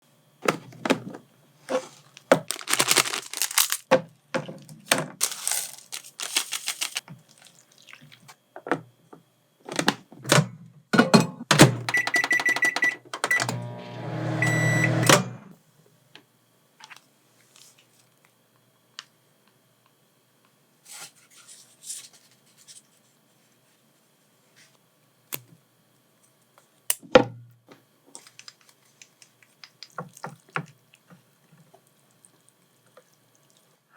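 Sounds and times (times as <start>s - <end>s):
plastic packaging crinkling: 1.7s - 3.9s, 5.2s - 7.7s, 28.2s - 30.0s
microwave oven humming: 9.8s - 16.7s
microwave keypad beeps: 11.8s - 13.6s, 14.4s - 15.4s
microwave beep: 11.8s - 15.5s.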